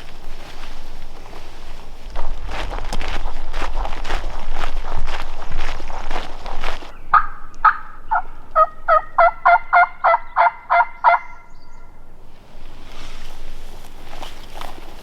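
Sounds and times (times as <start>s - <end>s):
footsteps crunching: 0.0s - 7.3s, 12.3s - 15.0s
turkey yelps: 7.1s - 11.5s.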